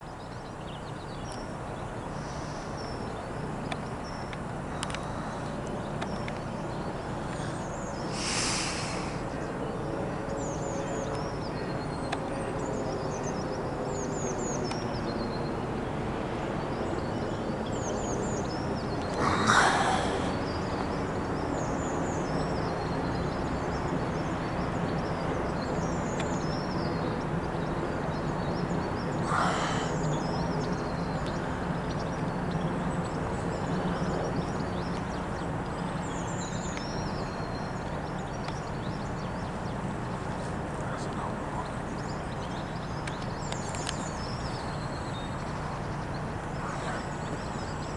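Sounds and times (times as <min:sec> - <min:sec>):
small birds chirping: 0:00.0 - 0:47.9
jet rumble overhead: 0:01.3 - 0:47.9
short rushes of noise: 0:08.2 - 0:09.2.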